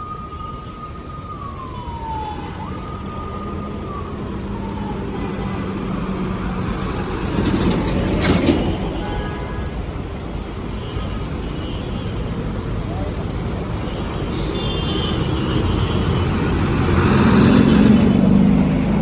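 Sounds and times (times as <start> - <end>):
siren wailing: 0.0 - 6.8
road traffic noise: 0.0 - 19.0.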